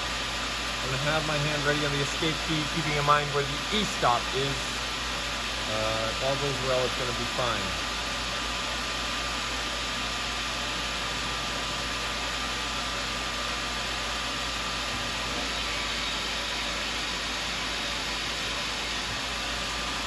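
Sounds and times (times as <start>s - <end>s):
mill machine hissing: 0.0s - 20.0s
faint high whine: 0.7s - 7.8s.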